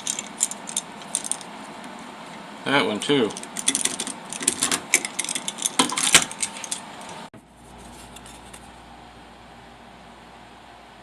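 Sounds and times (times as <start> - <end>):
metal tools clinking: 0.0 - 1.5, 3.0 - 7.3
faint steady hum: 0.0 - 11.0.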